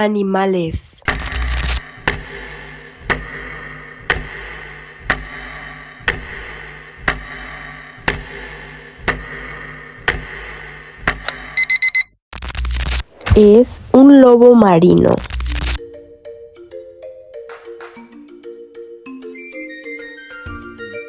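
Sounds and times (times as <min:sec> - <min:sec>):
clock ticking: 0:01.1 - 0:11.4
quick alarm beeps: 0:11.6 - 0:12.1.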